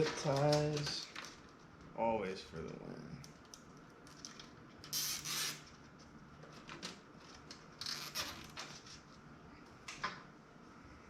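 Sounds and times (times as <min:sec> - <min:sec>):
cables rustling: 0:00.0 - 0:01.9.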